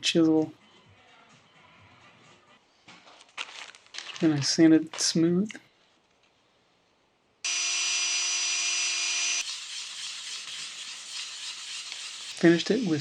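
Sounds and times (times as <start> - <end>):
power sander motor whine: 7.5 - 9.4.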